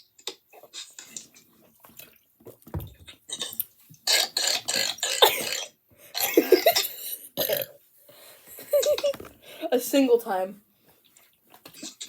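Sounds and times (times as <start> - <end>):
gulping: 2.8 - 7.8, 11.1 - 12.0
person belching: 7.4 - 7.8.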